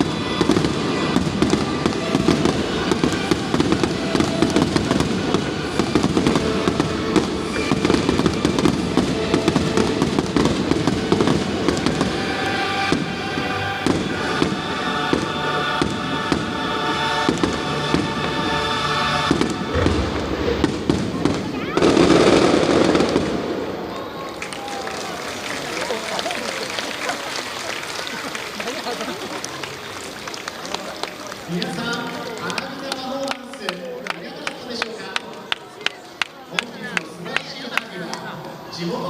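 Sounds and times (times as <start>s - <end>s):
music playing: 0.0s - 23.7s
fireworks booms and crackling: 0.0s - 24.8s.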